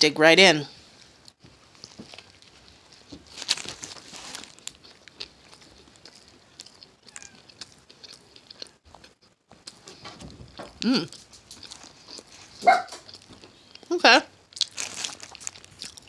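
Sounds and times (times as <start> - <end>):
person chewing: 1.0 - 16.0
crunchy bite: 14.5 - 16.0.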